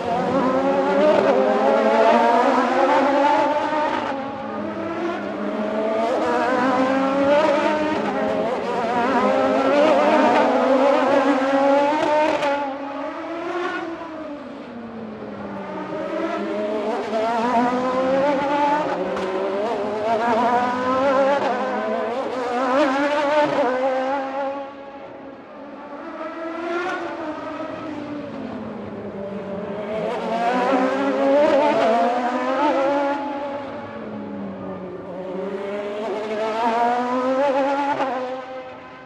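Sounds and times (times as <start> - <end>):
racing motorcycles revving: 0.0 - 14.6.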